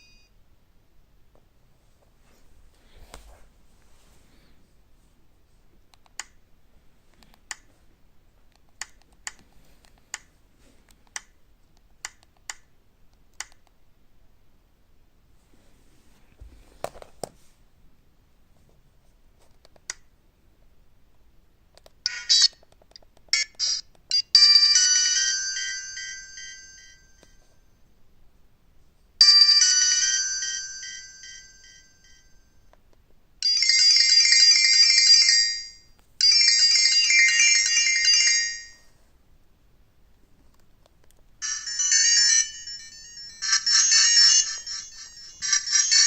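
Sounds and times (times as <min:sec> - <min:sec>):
chime: 0:00.0 - 0:00.3, 0:24.1 - 0:27.8, 0:29.2 - 0:32.7, 0:33.4 - 0:38.9, 0:41.4 - 0:46.0
electronic ringtone and alert tones: 0:22.1 - 0:22.6, 0:33.4 - 0:38.8, 0:41.4 - 0:46.0.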